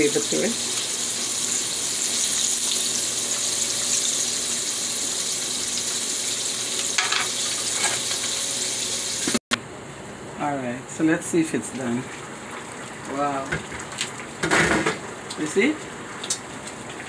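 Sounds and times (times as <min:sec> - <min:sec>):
pot sizzling on stove: 0:00.0 - 0:09.4.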